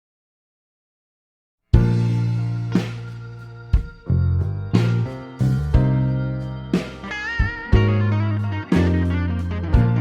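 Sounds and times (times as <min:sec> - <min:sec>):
sustained pitched music notes: 0:01.9 - 0:10.0.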